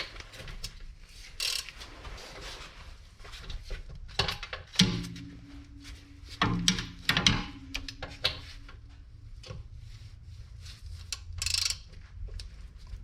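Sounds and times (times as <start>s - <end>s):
wrench knocking on metal bolt: 6.5s - 8.0s.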